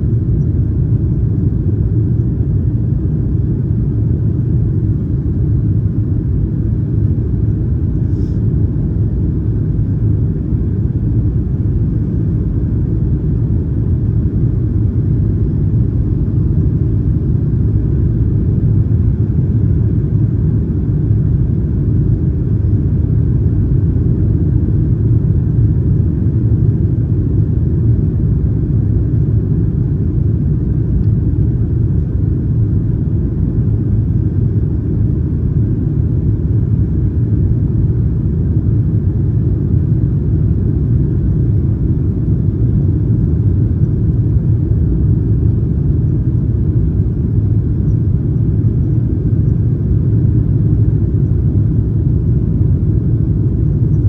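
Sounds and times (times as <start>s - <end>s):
airliner cabin engine rumble: 0.0s - 54.0s.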